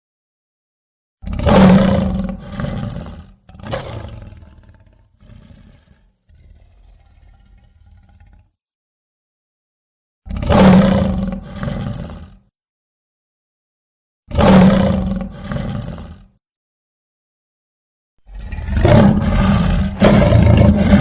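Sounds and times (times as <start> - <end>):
creature roar: 1.2 - 8.5, 10.3 - 12.4, 14.3 - 16.3, 18.3 - 21.0.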